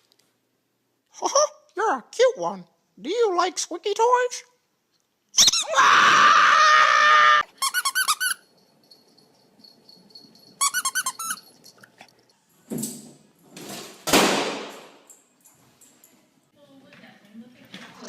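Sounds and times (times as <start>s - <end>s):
squeaky dog toy squeaking: 5.4s - 5.6s, 7.6s - 8.5s, 10.6s - 11.6s.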